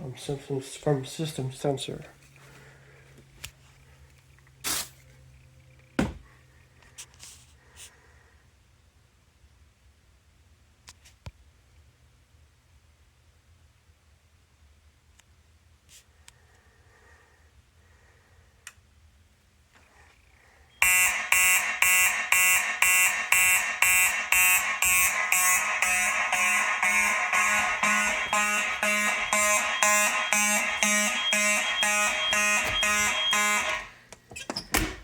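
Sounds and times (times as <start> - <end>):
fire alarm horn pulsing: 20.8 - 34.0.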